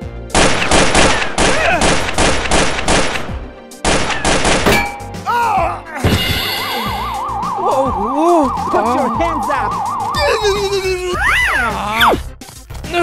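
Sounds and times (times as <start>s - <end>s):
automatic gunfire: 0.4s - 3.2s.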